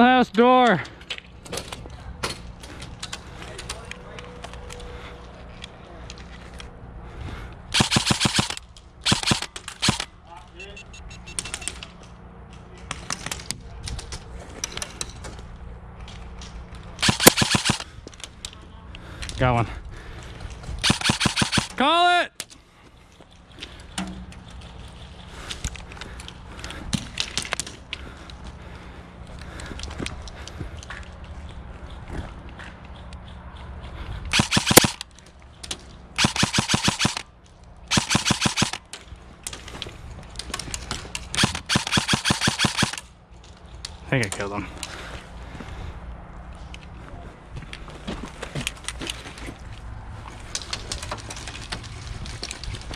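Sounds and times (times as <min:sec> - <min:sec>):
airsoft gunfire clicks: 0:07.8 - 0:10.1, 0:17.0 - 0:17.9, 0:20.8 - 0:21.8, 0:34.3 - 0:35.1, 0:36.2 - 0:37.2, 0:37.9 - 0:38.8, 0:41.3 - 0:43.1.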